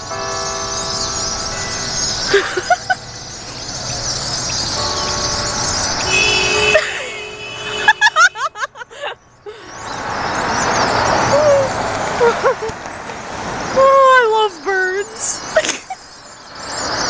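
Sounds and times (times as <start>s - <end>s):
flock of birds chattering: 0.0s - 8.1s, 8.9s - 17.0s
car horn blasts: 4.8s - 8.6s.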